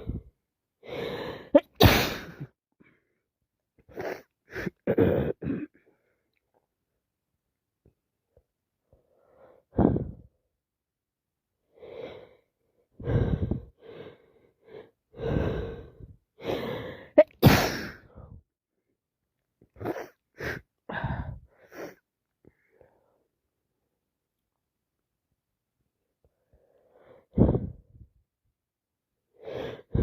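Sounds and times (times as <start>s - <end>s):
person sneezing: 1.6s - 2.5s, 17.2s - 18.1s
sharp gasping breaths: 11.8s - 18.4s, 26.3s - 28.0s.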